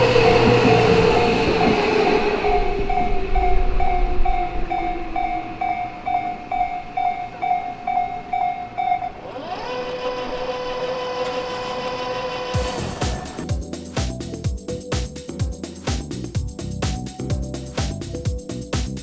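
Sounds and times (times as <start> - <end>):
level crossing warning bell: 0.0 - 9.3
passing train: 0.0 - 13.5
steady whine: 0.0 - 17.1.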